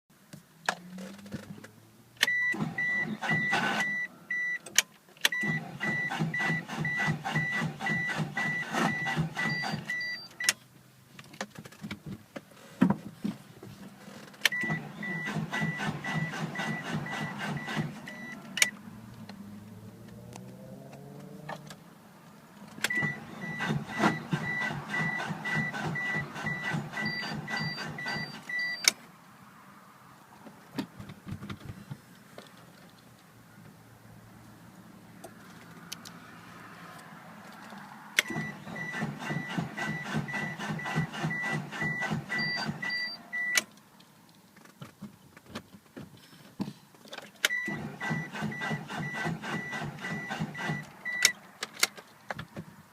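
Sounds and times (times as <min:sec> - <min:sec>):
car starter clicking and chattering: 0:00.7 - 0:10.6, 0:14.0 - 0:19.4, 0:22.6 - 0:29.0, 0:37.6 - 0:45.9, 0:47.0 - 0:52.6.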